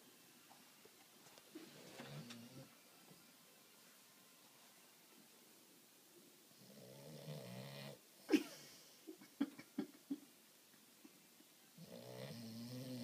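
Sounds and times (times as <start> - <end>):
dog snoring: 6.5 - 8.0, 11.8 - 13.0.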